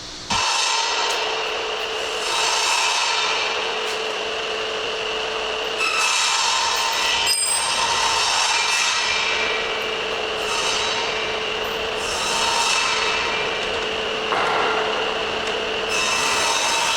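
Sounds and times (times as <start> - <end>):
sander motor humming: 0.3 - 16.9
wood rasping on sanding belt: 5.8 - 16.9.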